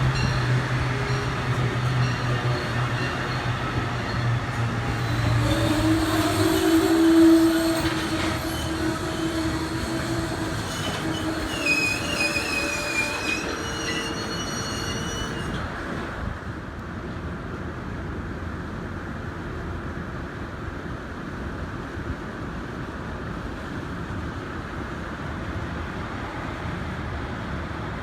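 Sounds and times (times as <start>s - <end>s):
train wheels squealing on rails: 0.0s - 16.2s.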